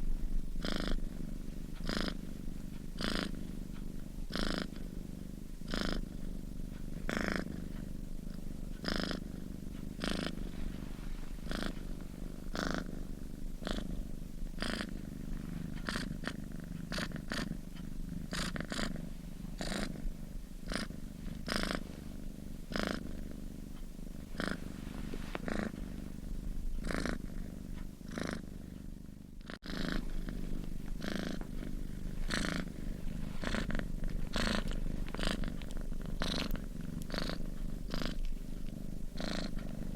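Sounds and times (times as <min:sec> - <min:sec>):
steady low rumble: 0:00.0 - 0:04.3, 0:19.1 - 0:39.9
cat snoring: 0:00.0 - 0:39.9.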